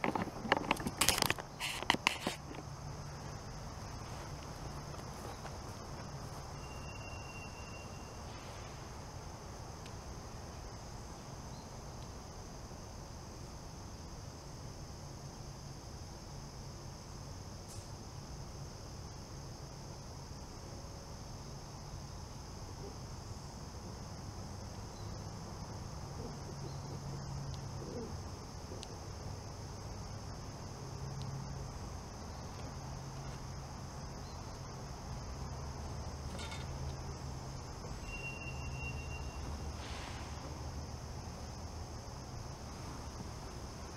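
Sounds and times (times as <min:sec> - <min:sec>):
insect chorus: 0:00.0 - 0:43.9.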